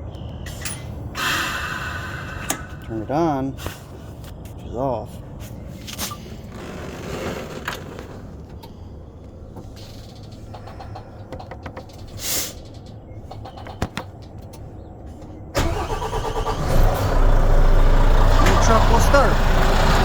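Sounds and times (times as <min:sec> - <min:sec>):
diesel engine starting and running: 0:00.1 - 0:04.1, 0:07.6 - 0:20.0
sharp clicks: 0:09.7 - 0:14.7.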